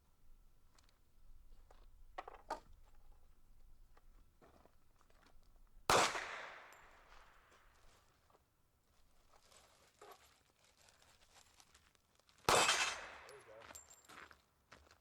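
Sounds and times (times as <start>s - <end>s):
gunshot with echo: 5.9s - 7.1s, 12.5s - 13.6s.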